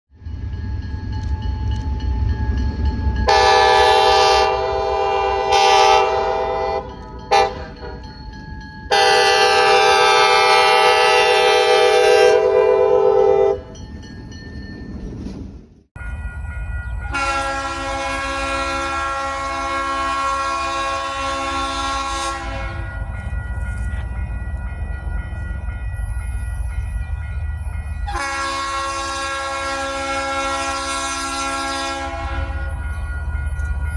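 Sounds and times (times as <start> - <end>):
low diesel locomotive rumble: 0.1 - 33.9
diesel locomotive horn blasts: 3.2 - 8.1, 8.9 - 13.7, 17.1 - 22.9, 28.0 - 33.0.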